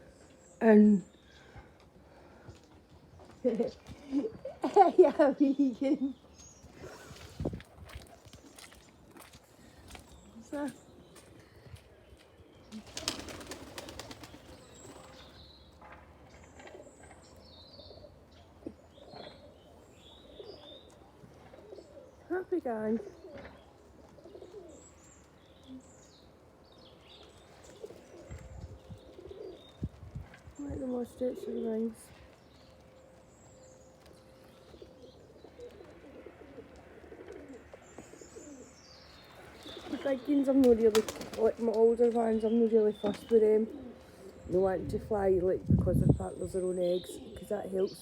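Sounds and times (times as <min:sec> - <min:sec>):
pigeon wings flapping: 0:12.8 - 0:15.1, 0:40.6 - 0:41.7
pigeons cooing: 0:12.8 - 0:15.4, 0:17.8 - 0:26.1, 0:27.2 - 0:29.9, 0:30.8 - 0:32.1, 0:34.5 - 0:41.7, 0:42.9 - 0:44.5.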